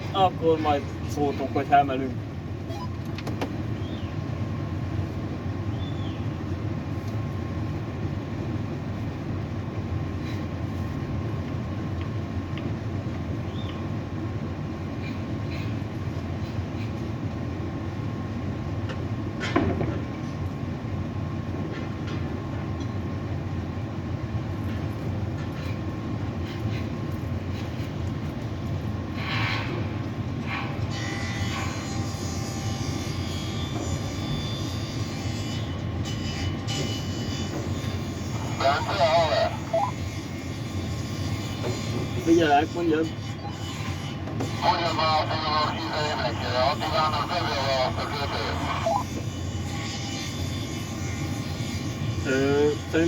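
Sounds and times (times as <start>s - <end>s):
faint machinery whine: 0.0s - 53.0s
crane machinery rumbling: 3.5s - 49.6s.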